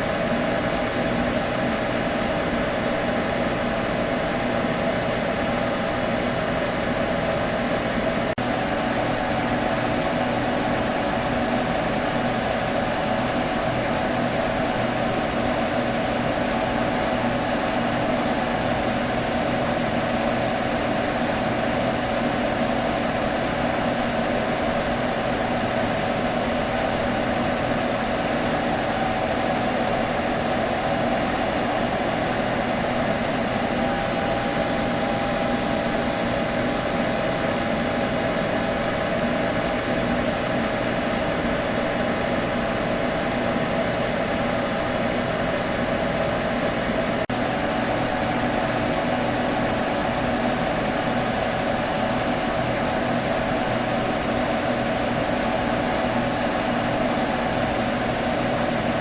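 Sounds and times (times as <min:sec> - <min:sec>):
computer humming: 0:08.6 - 0:42.1.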